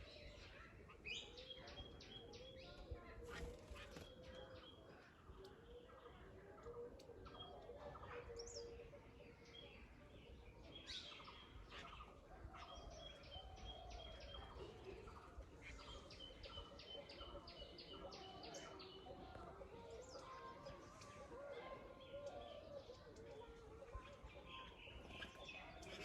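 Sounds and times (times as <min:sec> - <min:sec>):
birds chirping: 0:09.6 - 0:26.0.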